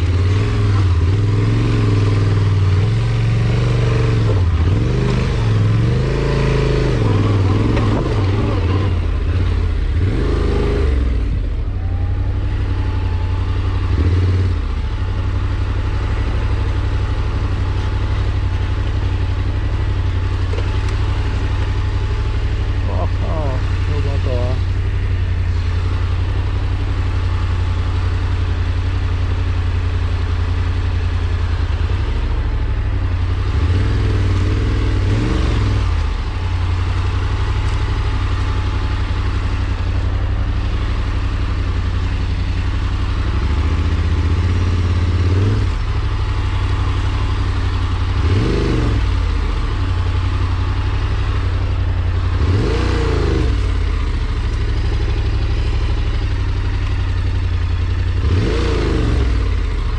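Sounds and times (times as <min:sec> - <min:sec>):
farm machine engine revving: 0:00.0 - 0:11.6, 0:33.5 - 0:56.9, 0:57.7 - 0:59.9.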